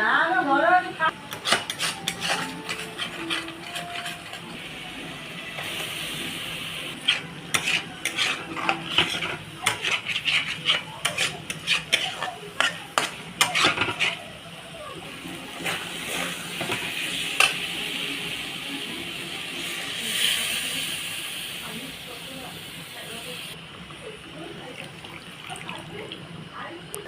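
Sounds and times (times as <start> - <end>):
food sizzling: 1.1 - 26.4
spoon scraping and clinking on pan: 1.3 - 4.5, 7.0 - 14.2.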